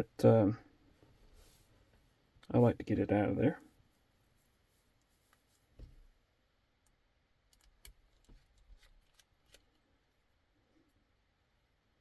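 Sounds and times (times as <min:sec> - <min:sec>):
soft handling thump: 0:05.7 - 0:06.1.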